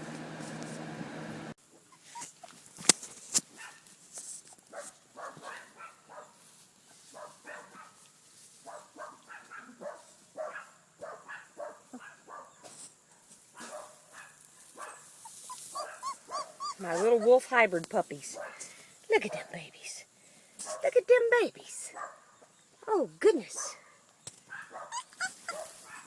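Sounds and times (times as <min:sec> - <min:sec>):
pups whimpering and squeaking: 0:01.9 - 0:02.6, 0:15.2 - 0:18.8, 0:24.7 - 0:26.0.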